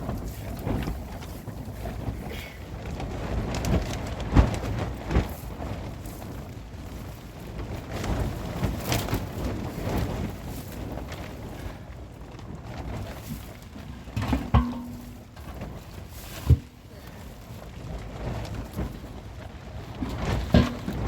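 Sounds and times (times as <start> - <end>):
sharp knocks: 14.2 - 15.4.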